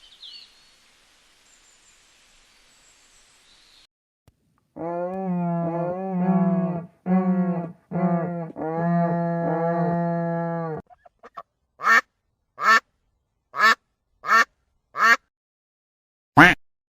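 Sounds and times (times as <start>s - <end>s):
long drawn-out animal calls: 4.8s - 10.9s
duck quacking: 11.2s - 12.8s, 13.6s - 15.2s, 16.4s - 16.6s.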